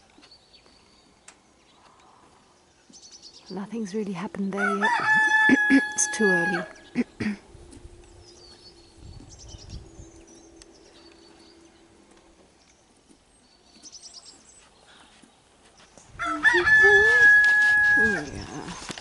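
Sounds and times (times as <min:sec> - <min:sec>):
small birds chirping: 0:00.0 - 0:04.7, 0:06.7 - 0:19.0
rooster crowing: 0:04.6 - 0:06.8, 0:16.2 - 0:18.3
faint steady hum: 0:05.5 - 0:13.6.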